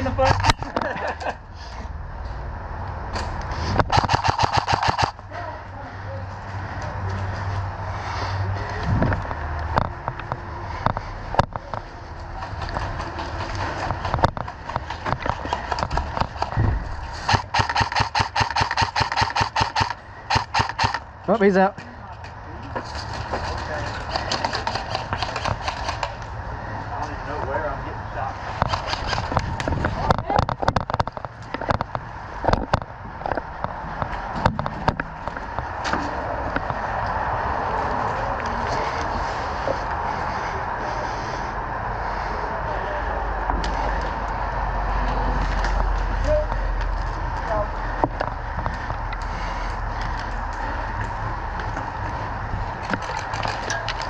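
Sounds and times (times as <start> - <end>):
steady rushing noise: 1.4 - 21.6, 23.0 - 54.0
airsoft gun single shots: 3.9 - 5.2
automatic airsoft gun firing: 3.9 - 5.2, 17.3 - 21.0.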